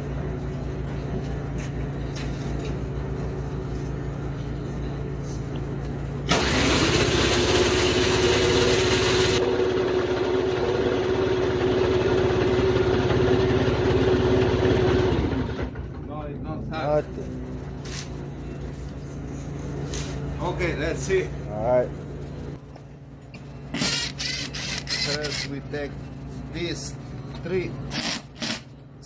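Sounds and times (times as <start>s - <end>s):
electric starter whine: 6.2s - 16.1s
engine turning over: 6.2s - 16.1s.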